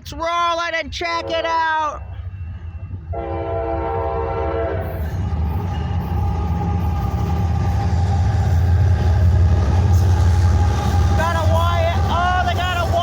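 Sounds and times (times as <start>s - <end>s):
diesel locomotives rumbling: 0.0s - 13.0s
locomotive air horn: 3.1s - 5.0s.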